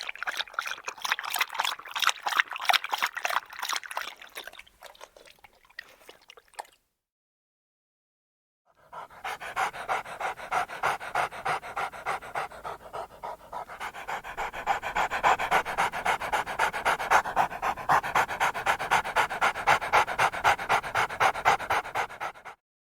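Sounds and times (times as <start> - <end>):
dog panting: 8.8 - 22.6.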